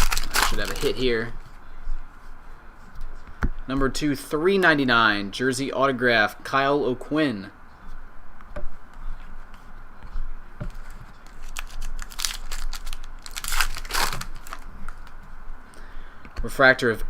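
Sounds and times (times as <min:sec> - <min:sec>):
foil wrapper crinkling and tearing: 0:00.0 - 0:01.3, 0:10.8 - 0:15.2.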